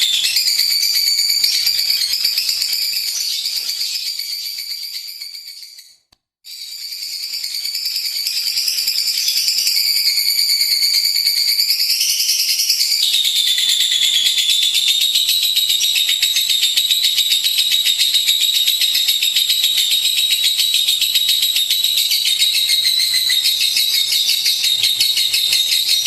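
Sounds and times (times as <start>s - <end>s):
lovebird chattering trill: 15.7s - 26.0s.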